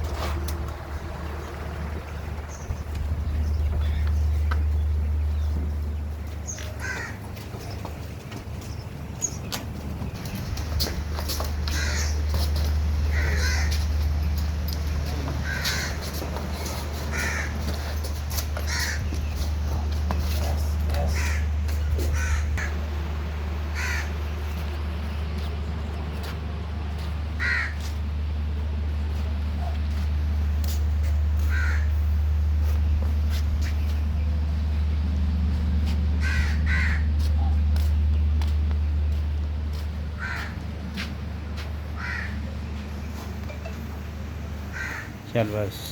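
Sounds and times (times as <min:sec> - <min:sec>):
steady low hum: 0:00.0 - 0:45.9
bird calling: 0:00.6 - 0:10.7, 0:11.5 - 0:14.3, 0:21.0 - 0:23.0.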